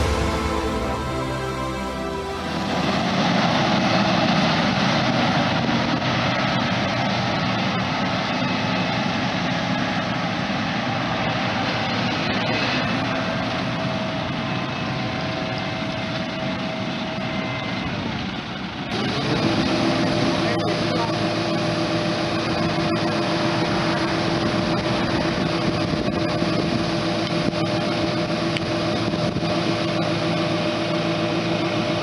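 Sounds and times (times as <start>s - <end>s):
faint steady tones: 0.0s - 4.7s
combine harvester running: 0.0s - 7.1s, 18.9s - 32.0s.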